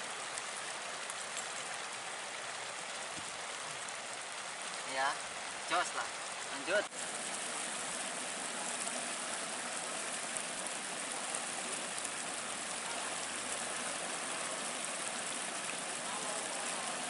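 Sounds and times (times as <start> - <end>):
river water rushing: 0.0 - 17.0.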